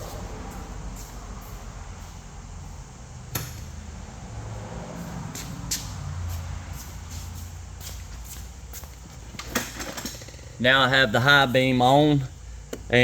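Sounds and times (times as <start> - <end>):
steady low rumble: 0.0 - 8.7.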